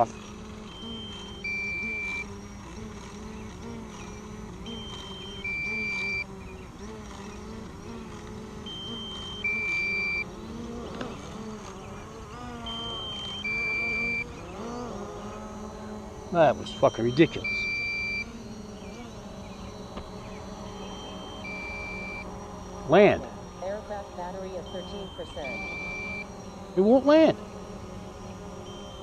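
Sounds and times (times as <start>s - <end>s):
drone propellers buzzing: 0.0s - 29.0s
two-note electronic warning beep: 0.7s - 2.4s, 4.7s - 6.3s, 8.7s - 10.3s, 12.6s - 14.3s, 16.3s - 19.0s, 19.6s - 23.4s, 24.4s - 26.9s, 28.6s - 29.0s.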